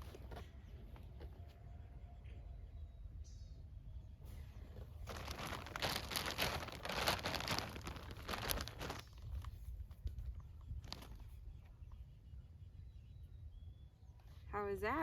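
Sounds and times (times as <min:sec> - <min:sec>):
clothing rustling: 0:04.8 - 0:09.5.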